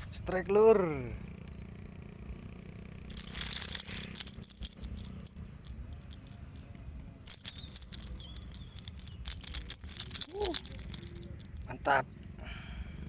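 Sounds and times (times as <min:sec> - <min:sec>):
fishing reel clicking: 0:03.1 - 0:11.7.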